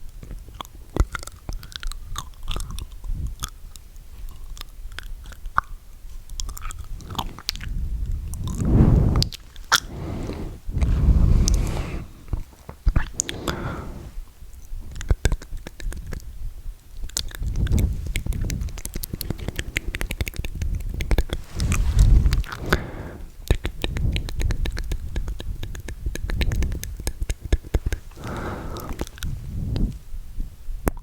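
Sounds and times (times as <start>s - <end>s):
tongue clicks and lip smacks: 0.0s - 9.9s, 14.6s - 21.7s, 23.4s - 30.0s
low moist thuds: 7.9s - 14.2s.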